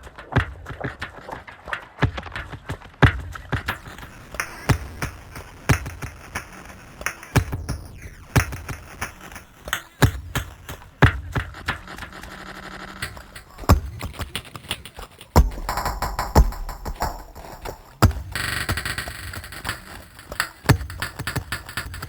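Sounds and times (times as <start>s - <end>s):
sharp percussive clicks and knocks: 0.0s - 22.0s
heavy low thumps: 15.4s - 18.4s.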